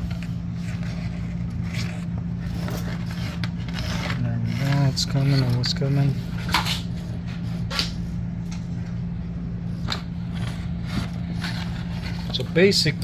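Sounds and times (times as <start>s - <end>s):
cable hardware clicks and scrapes: 0.0s - 6.9s
steady low hum: 0.0s - 13.0s.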